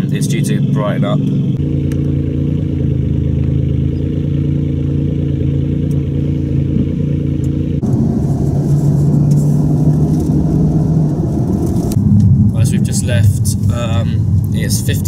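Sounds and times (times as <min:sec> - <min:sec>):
car engine humming: 0:00.0 - 0:15.0
road noise with hiss: 0:07.8 - 0:15.0.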